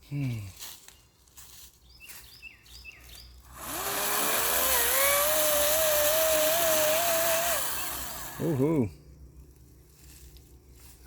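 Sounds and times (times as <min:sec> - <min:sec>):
electric chainsaw cutting log: 0:03.5 - 0:08.8.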